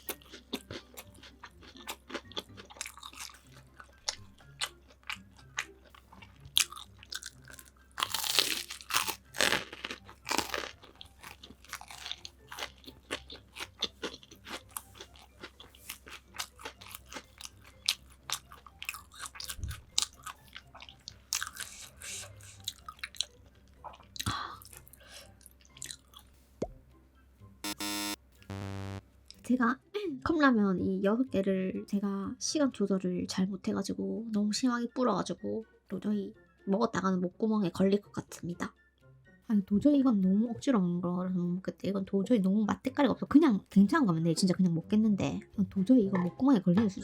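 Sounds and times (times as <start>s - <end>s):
crunching fried food: 0.0s - 26.2s.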